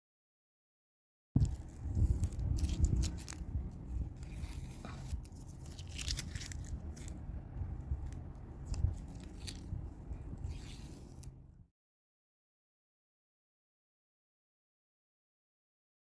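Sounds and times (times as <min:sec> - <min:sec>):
brush scratching and tapping canvas: 0:01.4 - 0:11.4
low handling rumble: 0:01.4 - 0:11.6.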